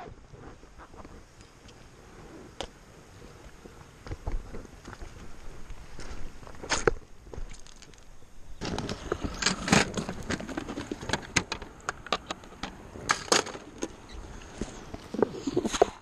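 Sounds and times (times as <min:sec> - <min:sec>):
crunching on gravel: 0:00.4 - 0:16.0.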